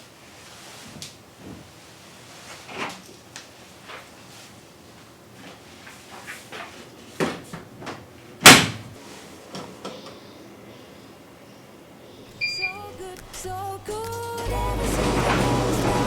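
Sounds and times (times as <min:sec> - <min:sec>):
short electronic beeps: 0:12.3 - 0:13.0.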